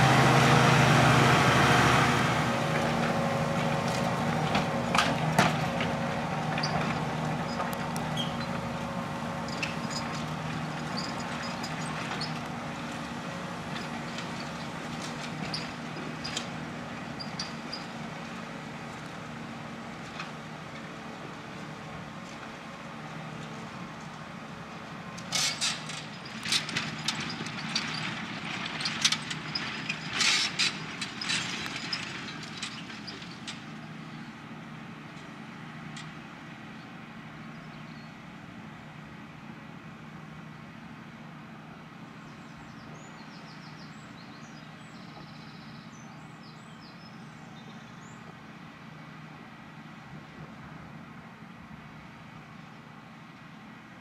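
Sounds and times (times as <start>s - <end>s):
tractor engine running under load: 0.0s - 54.0s.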